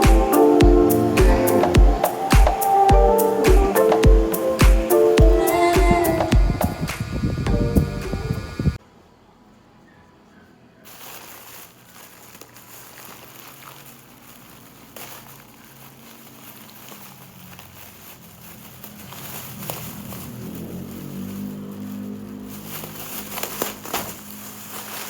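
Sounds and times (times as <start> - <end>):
soft rustling and crinkling: 9.5 - 25.0.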